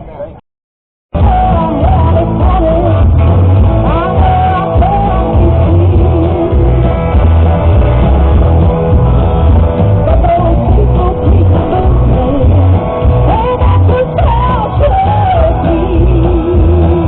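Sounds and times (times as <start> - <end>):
guitar: 1.1 - 17.0
loud rock music: 1.1 - 17.0
person singing: 1.2 - 7.3, 9.9 - 17.0
heavy bass beat: 1.2 - 17.0.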